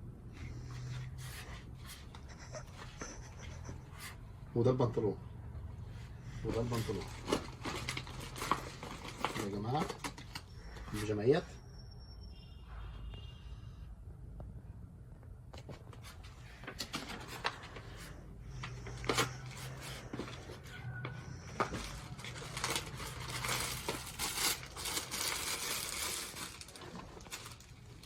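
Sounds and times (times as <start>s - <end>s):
clothes and packaging rustling: 5.8s - 11.6s, 15.3s - 28.0s.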